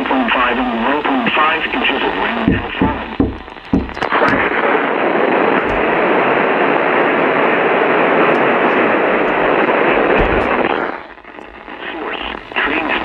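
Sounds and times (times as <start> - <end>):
broken-up radio audio: 0.0 - 13.0
radio static hiss: 0.0 - 13.0
low thumps: 2.2 - 4.6, 5.6 - 6.3, 8.2 - 12.6.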